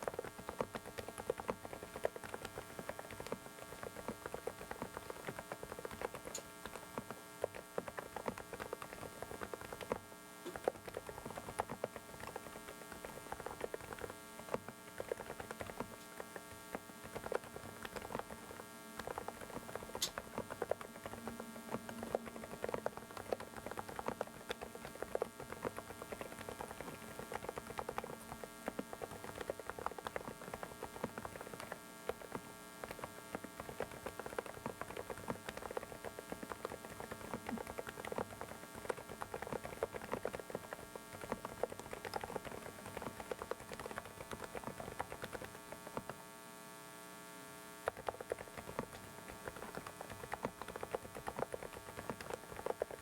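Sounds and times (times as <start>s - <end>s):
mechanical keyboard typing: 0.0s - 46.2s, 47.8s - 53.0s
electrical microphone noise: 0.0s - 53.0s.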